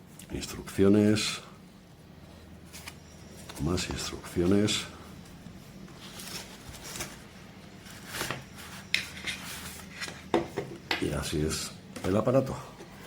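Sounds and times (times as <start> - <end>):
paper rustling: 2.6 - 10.3.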